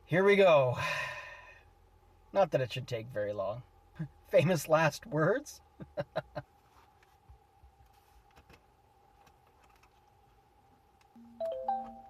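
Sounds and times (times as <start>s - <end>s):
faint hum: 0.0s - 12.0s
mobile phone ringing: 11.2s - 12.0s.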